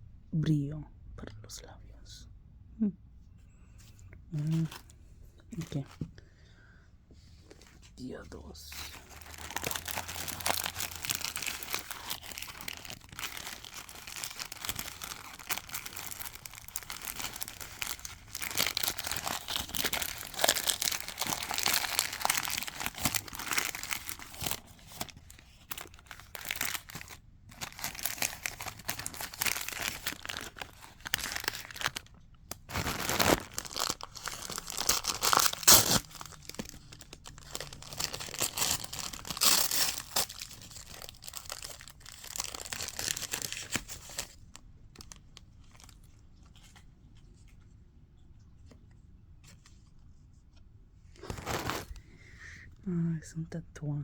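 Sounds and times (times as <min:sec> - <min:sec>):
wrapping being torn and crinkled: 0:04.3 - 0:04.9, 0:08.6 - 0:47.6, 0:51.2 - 0:52.0.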